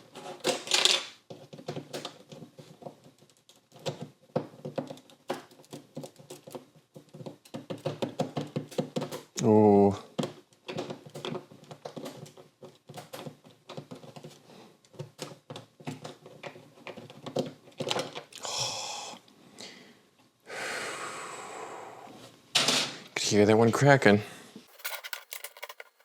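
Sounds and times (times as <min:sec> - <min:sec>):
plastic scraping: 0:24.7 - 0:26.0.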